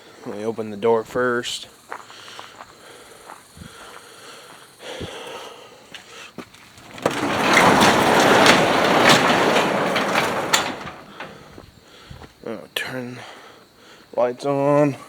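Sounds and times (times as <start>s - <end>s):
large door rattling open: 6.5s - 11.6s
door clicks and knocks: 6.6s - 11.5s.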